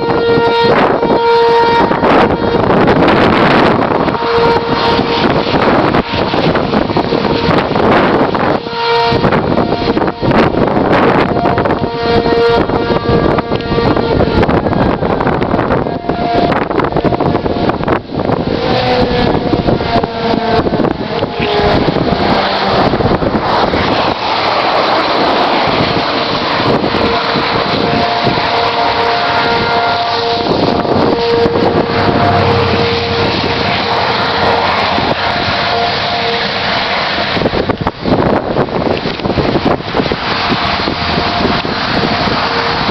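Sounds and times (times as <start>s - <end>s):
strong wind buffeting microphone: 0.0s - 42.9s
steady high tones: 30.0s - 36.7s.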